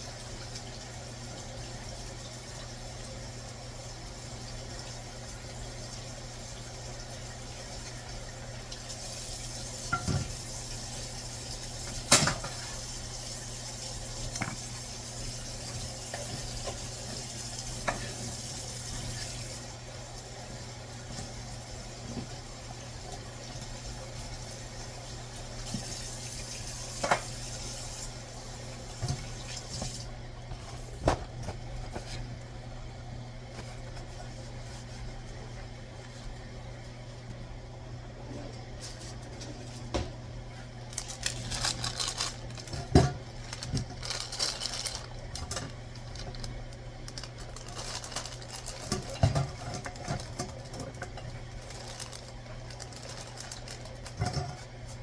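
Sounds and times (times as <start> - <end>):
water running from tap: 0.0 - 30.2, 40.8 - 55.0
low hum and hiss: 0.0 - 55.0
pots and utensils clinking: 9.8 - 10.5, 11.8 - 12.8, 47.1 - 55.0.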